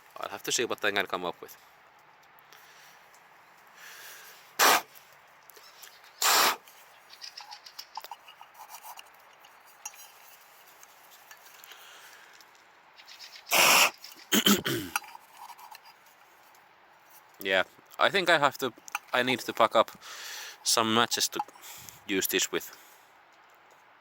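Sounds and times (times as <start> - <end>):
rustling: 2.5 - 14.4.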